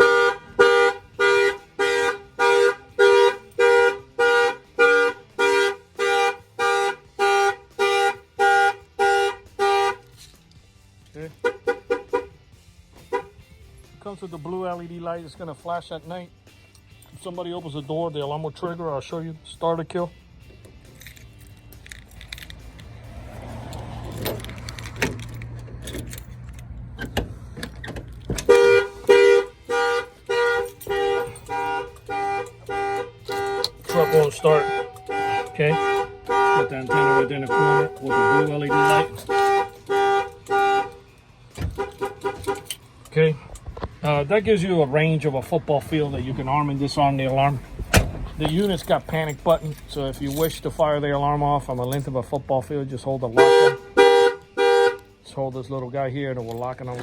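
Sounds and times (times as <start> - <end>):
car alarm honking: 0.0 - 10.1, 11.4 - 12.4, 13.1 - 13.4, 28.3 - 42.8, 53.3 - 55.1.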